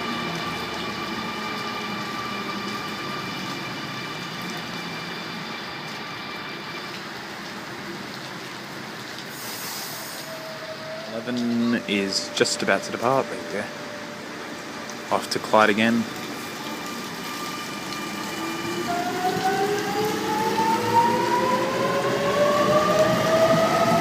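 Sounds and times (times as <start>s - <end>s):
electric train whine: 0.0s - 24.0s
brief high hiss: 9.3s - 10.4s
train hiss: 9.3s - 10.6s.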